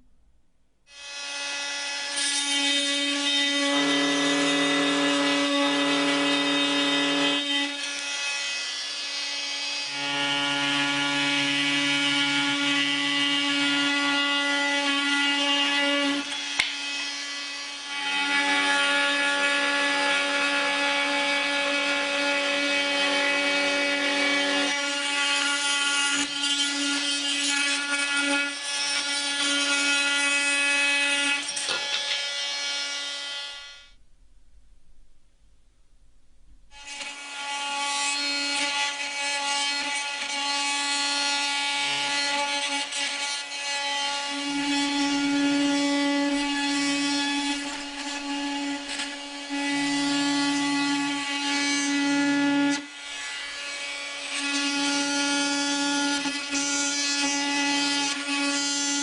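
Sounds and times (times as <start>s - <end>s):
oscillating multi-tool cutting: 0.9s - 34.0s, 36.7s - 59.0s.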